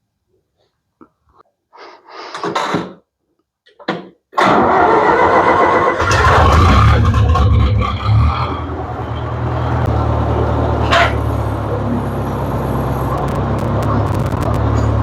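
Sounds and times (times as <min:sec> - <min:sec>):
tractor engine running: 0:04.4 - 0:15.0.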